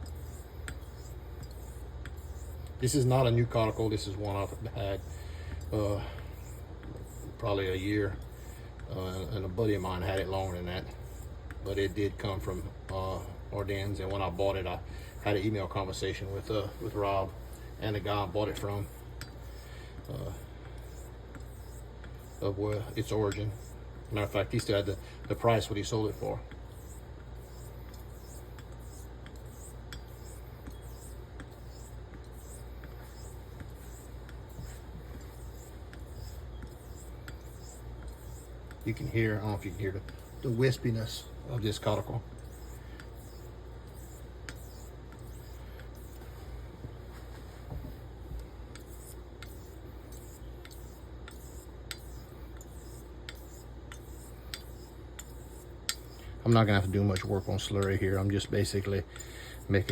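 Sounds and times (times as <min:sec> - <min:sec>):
razor swishing on whetstone: 0:00.0 - 0:59.9.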